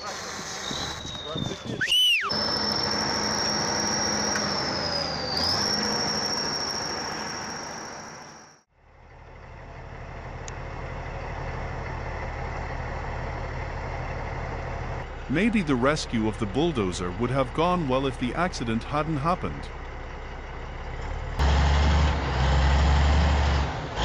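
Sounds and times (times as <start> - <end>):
heavy machinery squealing whine: 0.0 - 8.6
heavy vehicle engine running: 2.3 - 24.0.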